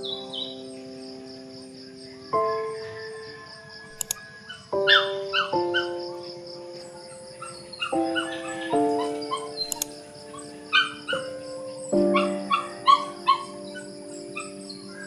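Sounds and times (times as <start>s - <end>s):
soft background music: 0.0s - 15.0s
dog yipping and barking: 4.5s - 5.9s, 7.4s - 11.4s, 12.0s - 15.0s.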